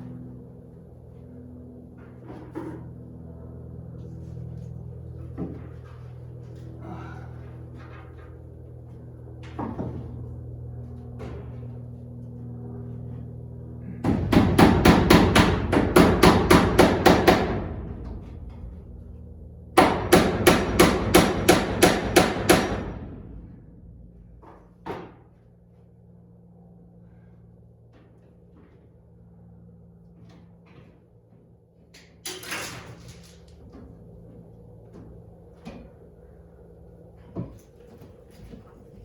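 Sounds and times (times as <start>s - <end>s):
hammer striking nails: 14.0s - 17.7s, 19.8s - 23.0s.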